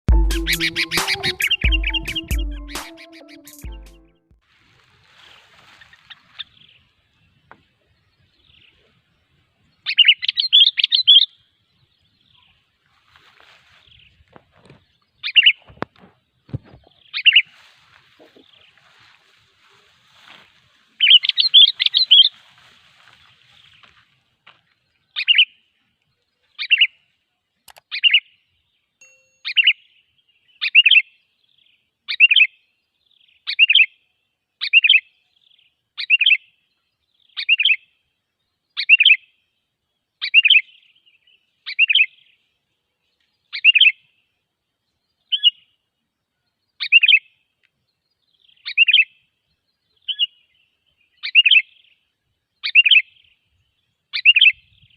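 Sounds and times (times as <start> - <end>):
bulbul calling: 0.1 - 4.2, 9.8 - 11.4, 14.6 - 20.4, 21.0 - 22.4, 29.0 - 29.9, 43.5 - 44.0, 51.2 - 51.8, 52.6 - 53.2, 54.1 - 54.9.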